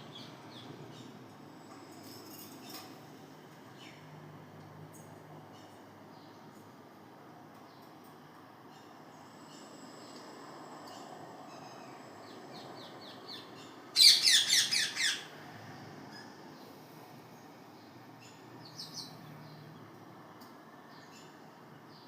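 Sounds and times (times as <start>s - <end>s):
parrot squawking: 14.0s - 15.3s.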